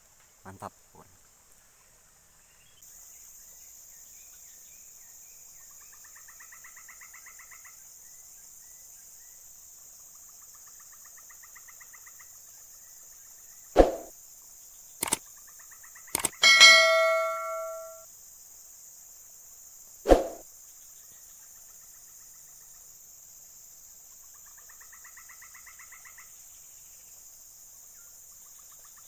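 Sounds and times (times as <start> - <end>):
sharp knock: 16.2 - 18.0.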